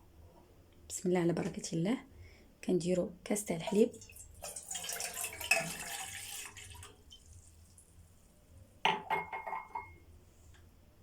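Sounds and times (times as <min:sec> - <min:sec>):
milk pouring and splashing: 0:03.7 - 0:08.0.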